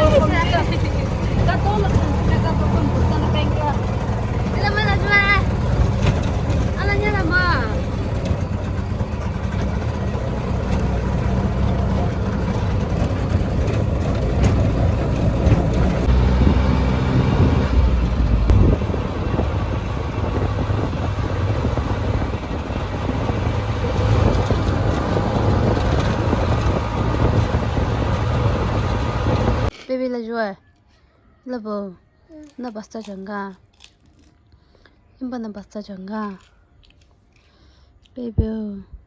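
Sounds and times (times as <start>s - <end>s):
vehicle engine and road rumble: 0.0s - 29.8s.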